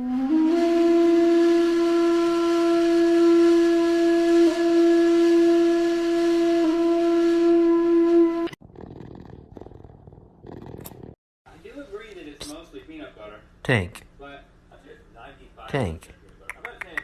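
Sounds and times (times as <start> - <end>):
long held wind instrument note: 0.0 - 8.5.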